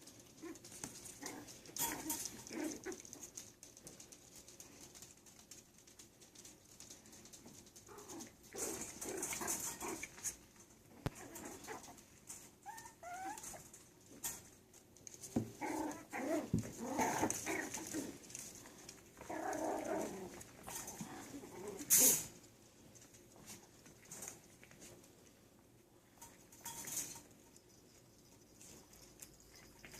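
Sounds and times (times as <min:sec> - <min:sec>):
puppies yipping and whining: 0:12.6 - 0:13.6.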